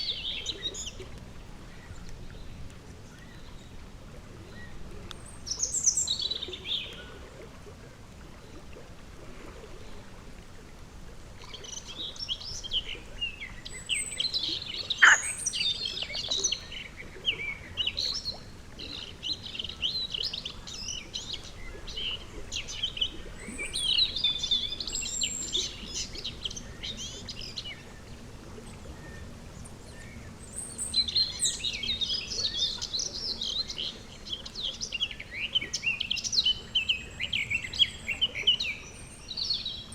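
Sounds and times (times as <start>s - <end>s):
faint pond background: 0.0s - 39.9s
songbird chattering: 14.9s - 15.7s.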